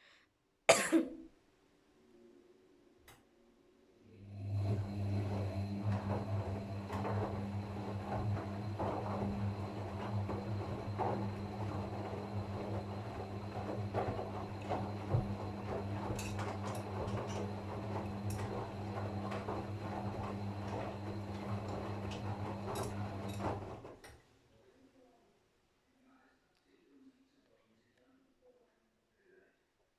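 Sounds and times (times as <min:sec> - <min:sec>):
washing machine running: 0:04.2 - 0:24.1.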